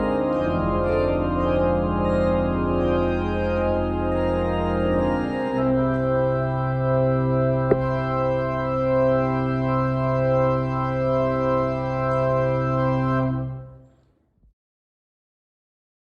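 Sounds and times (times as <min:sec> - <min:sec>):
church organ sustained chord: 0:00.0 - 0:13.8.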